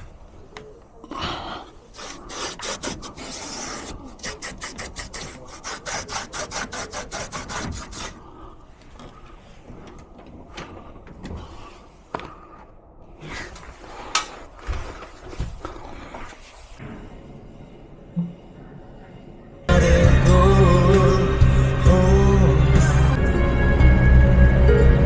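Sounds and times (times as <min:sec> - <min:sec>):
rapid rubbing strokes: 0:02.0 - 0:08.2.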